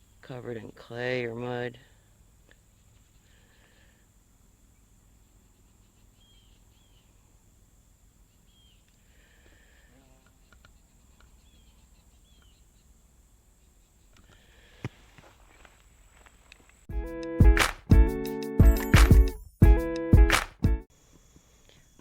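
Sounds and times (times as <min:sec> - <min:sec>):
faint steady hiss: 0:00.0 - 0:16.9, 0:20.9 - 0:22.0
faint bird chirps: 0:04.7 - 0:07.4, 0:08.2 - 0:09.0, 0:09.9 - 0:14.2.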